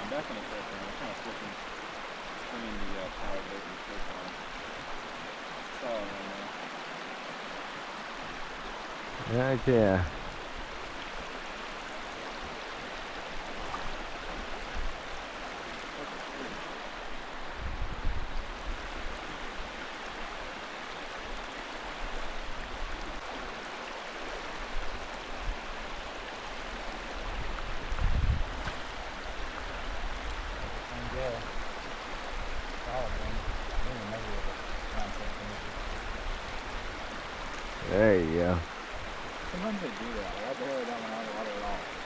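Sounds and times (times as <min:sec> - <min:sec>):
river water rushing: 0:00.0 - 0:42.0.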